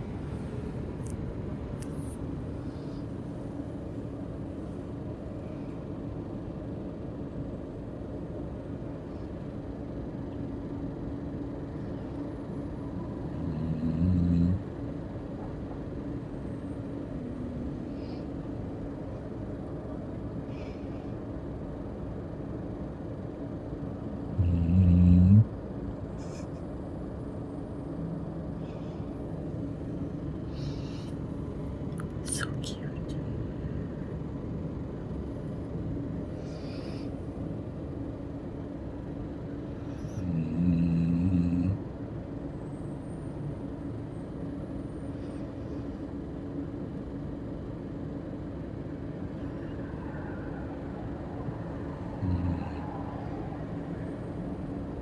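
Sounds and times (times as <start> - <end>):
steady low hum: 0.0 - 55.0
pet snoring: 13.3 - 14.6, 24.4 - 25.5, 39.9 - 41.8, 52.2 - 52.9.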